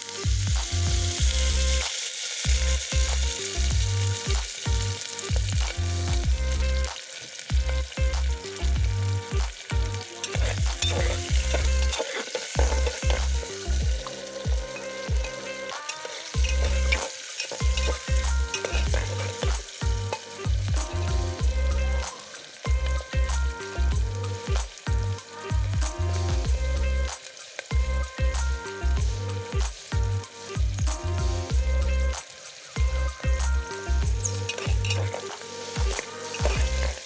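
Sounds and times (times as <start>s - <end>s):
food sizzling in a pan: 0.0s - 37.0s
spoon scraping and knocking pan: 10.2s - 20.4s, 34.0s - 37.0s.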